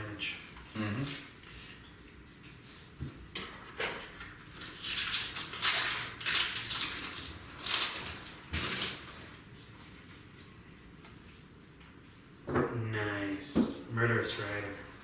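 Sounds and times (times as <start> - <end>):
paper and foil rustling: 4.2 - 9.4.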